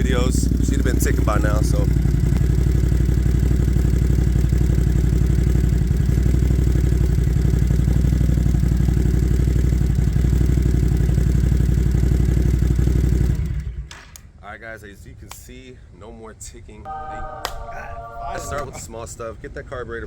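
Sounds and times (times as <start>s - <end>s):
engine idling: 0.0s - 14.0s.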